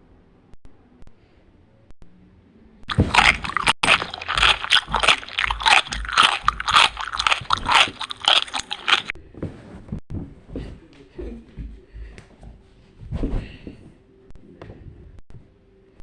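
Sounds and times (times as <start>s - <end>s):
loud crunching chewing: 2.9s - 9.1s.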